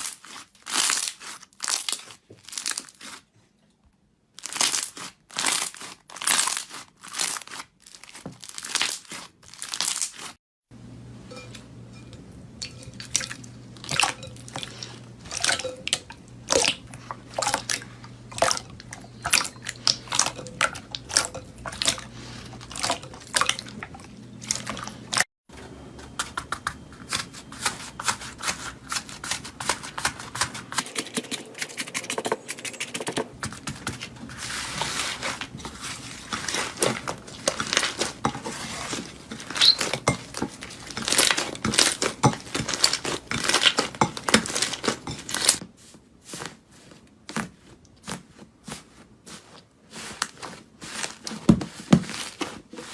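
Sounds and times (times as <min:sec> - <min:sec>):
slime crackling and crunching: 0:00.0 - 0:03.3, 0:04.4 - 0:10.4, 0:33.8 - 0:45.6
low steady hum: 0:10.7 - 0:45.6.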